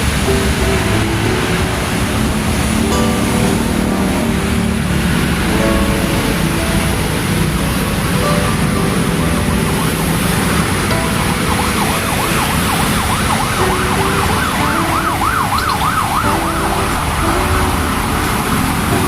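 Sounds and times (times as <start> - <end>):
rain: 0.0 - 19.0
road noise: 0.0 - 19.0
siren yelping: 8.4 - 18.1.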